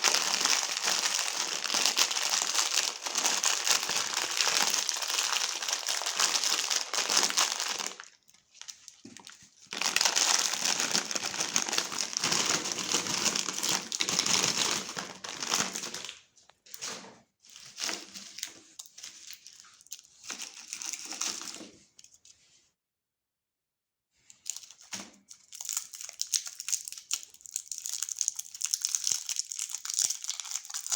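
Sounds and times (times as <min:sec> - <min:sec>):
candy crunching in grinder: 0:00.0 - 0:08.8, 0:09.6 - 0:16.2, 0:24.3 - 0:30.9.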